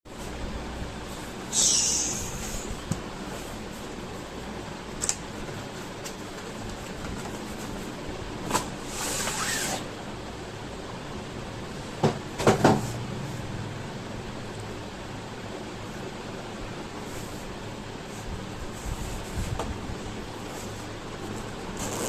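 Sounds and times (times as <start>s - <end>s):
steady hiss: 1.0s - 4.5s.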